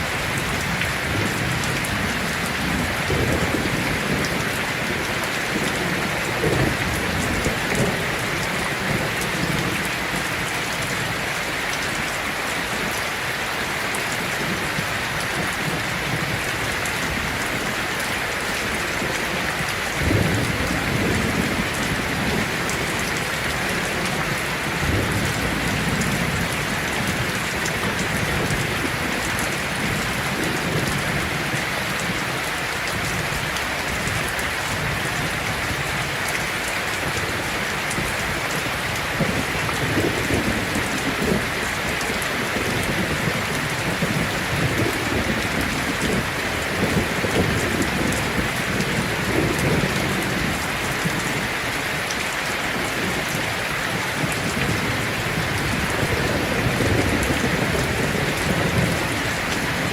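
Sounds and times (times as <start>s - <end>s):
thunder rumbling: 0.0s - 11.2s, 17.0s - 32.3s, 52.8s - 59.9s
heavy rain on a tin roof: 0.0s - 59.9s.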